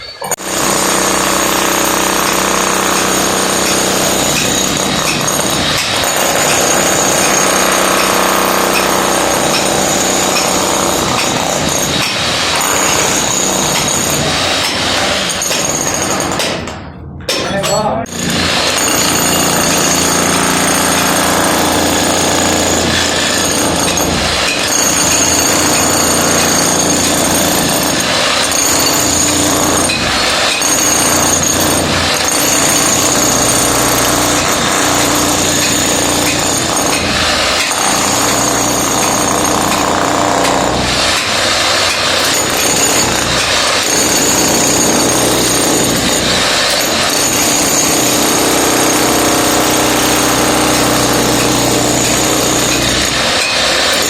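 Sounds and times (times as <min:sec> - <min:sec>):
demolition hammer breaking concrete: 0:00.0 - 0:54.0.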